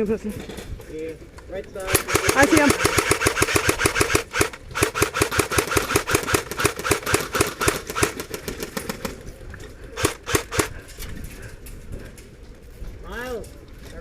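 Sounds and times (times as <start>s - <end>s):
airsoft gun firing: 1.9s - 9.2s, 10.0s - 10.8s.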